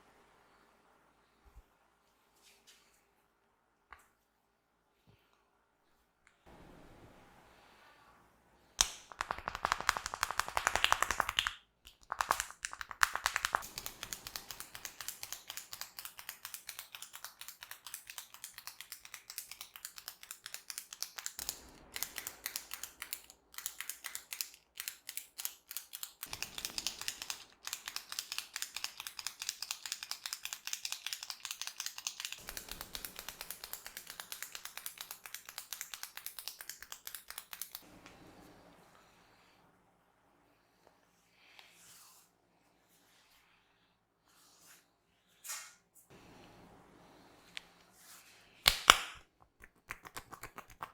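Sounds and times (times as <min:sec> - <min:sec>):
hair crackling between fingers: 0:08.8 - 0:37.8, 0:48.6 - 0:50.9.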